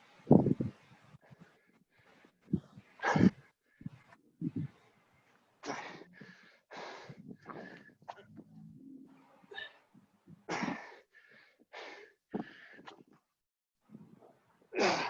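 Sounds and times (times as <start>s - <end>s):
man breathing heavily: 1.2s - 4.9s, 5.6s - 8.1s, 9.5s - 13.2s.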